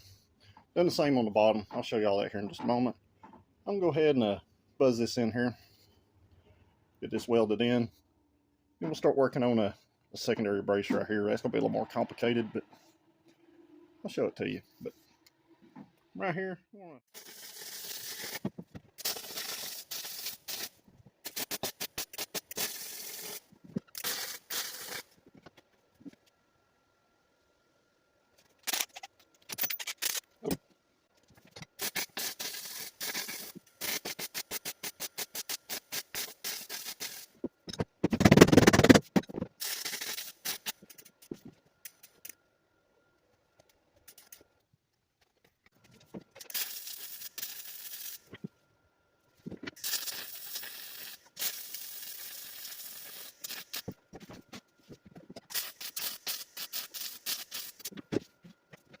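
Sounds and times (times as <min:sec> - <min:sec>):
welding arc crackling: 0:17.1 - 0:25.1, 0:31.8 - 0:37.4, 0:38.2 - 0:41.0, 0:46.4 - 0:48.3, 0:49.8 - 0:53.9, 0:55.5 - 0:57.9.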